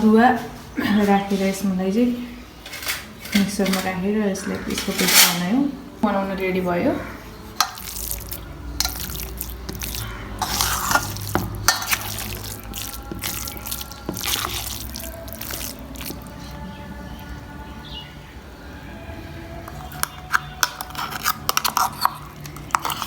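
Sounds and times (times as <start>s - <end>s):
water dripping and splashing: 7.6s - 16.4s.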